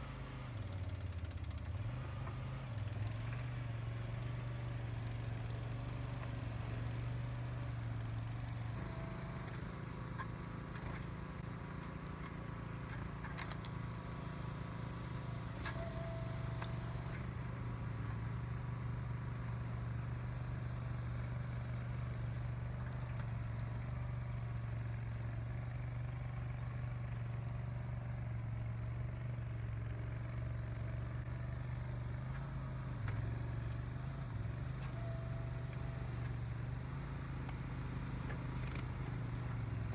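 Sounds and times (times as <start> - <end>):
skid steer engine running: 0.0 - 39.9.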